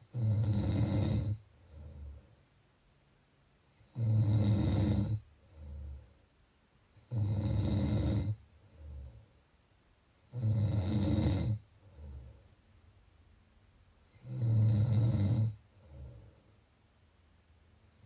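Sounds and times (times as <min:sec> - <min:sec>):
person snoring: 0:00.0 - 0:02.2, 0:03.8 - 0:06.0, 0:07.1 - 0:09.2, 0:10.3 - 0:12.3, 0:14.1 - 0:16.3
quiet breath: 0:00.0 - 0:02.8, 0:03.6 - 0:13.0, 0:13.9 - 0:17.1, 0:17.7 - 0:18.0.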